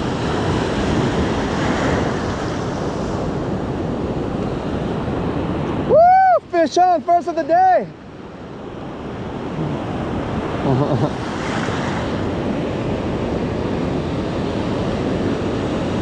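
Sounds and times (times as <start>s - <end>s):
wind on microphone: 0.0s - 6.5s
ocean surf breaking: 0.0s - 16.0s.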